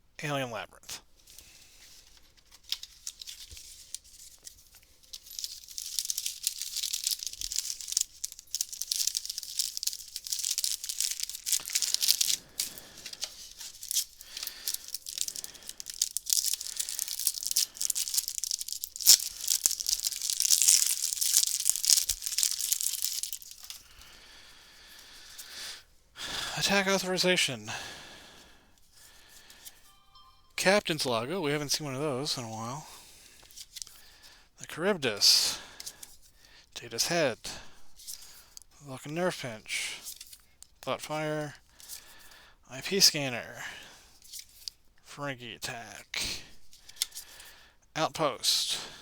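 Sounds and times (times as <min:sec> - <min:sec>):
wrapper tearing and crinkling: 0:02.2 - 0:24.2.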